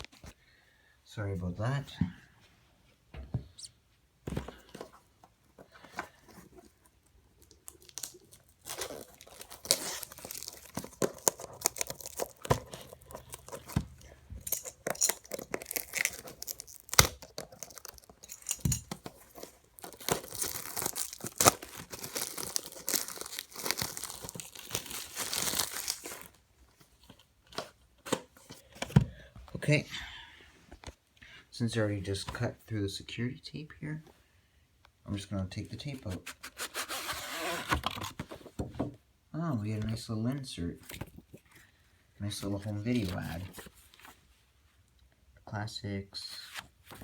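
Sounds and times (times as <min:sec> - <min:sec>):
shrink wrap tearing and crinkling: 0:07.4 - 0:26.4.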